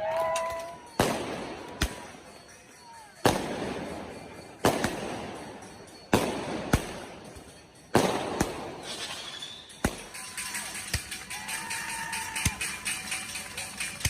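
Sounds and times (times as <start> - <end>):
fireworks bangs echoing: 0.8 - 2.6, 3.2 - 11.6.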